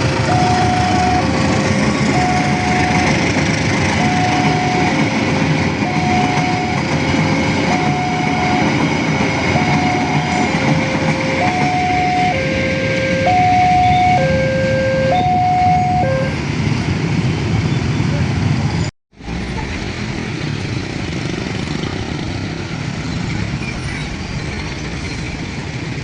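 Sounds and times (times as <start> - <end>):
passing train: 0.0 - 26.0
two-tone level crossing alarm: 0.3 - 1.4, 2.0 - 16.4.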